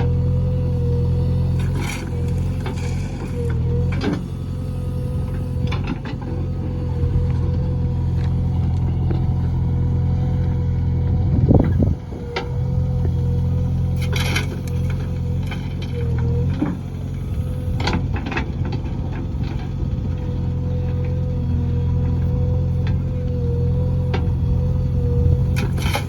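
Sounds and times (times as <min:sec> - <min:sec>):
diesel engine running: 0:00.0 - 0:26.0.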